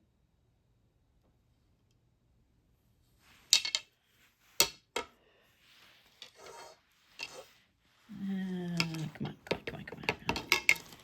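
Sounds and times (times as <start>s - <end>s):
rubbing and scraping: 5.6s - 11.0s.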